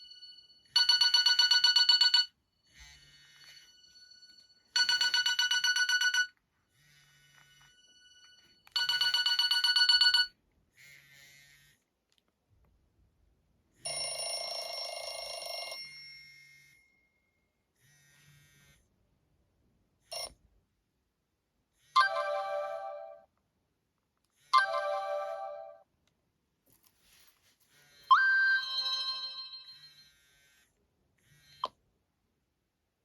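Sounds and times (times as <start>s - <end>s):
bell-like phone ringtone: 0.0s - 6.4s, 7.8s - 10.3s, 13.9s - 17.2s, 20.1s - 20.4s, 22.0s - 23.3s, 24.6s - 25.8s, 28.1s - 30.2s
soft phone tone: 22.0s - 23.2s, 24.6s - 25.8s.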